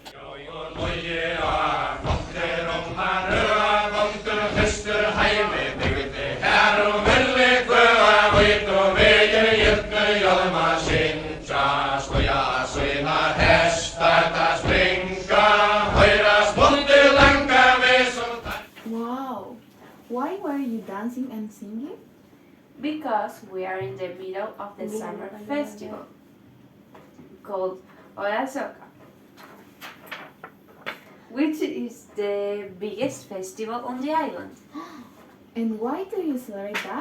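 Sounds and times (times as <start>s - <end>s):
group of voices chanting in unison: 0.0s - 18.6s
steady beat: 0.0s - 18.6s.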